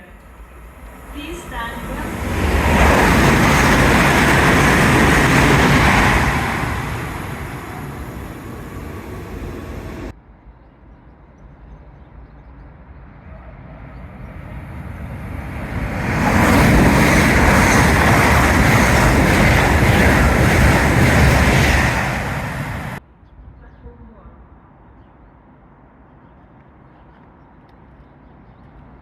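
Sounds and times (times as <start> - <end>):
passenger trains passing: 0.0 - 10.1, 13.0 - 23.0.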